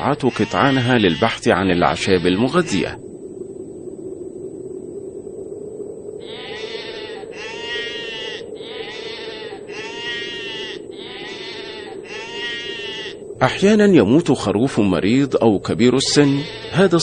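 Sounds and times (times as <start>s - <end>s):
sheep bleating: 0.0s - 2.8s, 6.2s - 13.2s, 16.0s - 17.0s.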